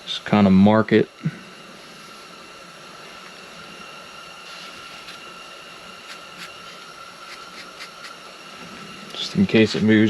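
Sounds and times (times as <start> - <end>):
faint high whine: 0.0 - 10.0
steady hiss: 0.0 - 10.0
marker scratching on steel plate: 4.4 - 8.2.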